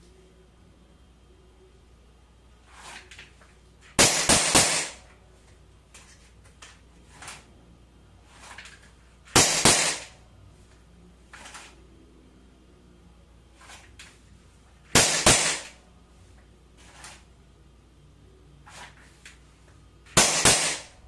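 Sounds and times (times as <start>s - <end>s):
air pistol shots: 4.0s - 5.1s, 9.3s - 10.2s, 14.9s - 15.8s, 20.1s - 21.0s.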